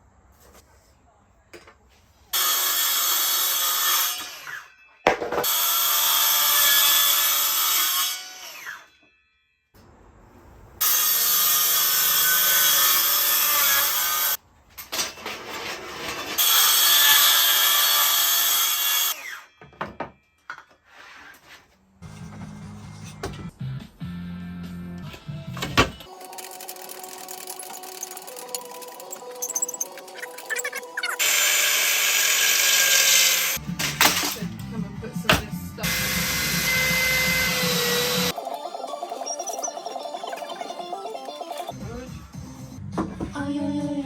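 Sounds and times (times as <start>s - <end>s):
power saw cutting board: 2.4s - 4.7s, 5.3s - 8.9s, 16.3s - 19.5s, 31.2s - 34.4s, 35.2s - 38.4s.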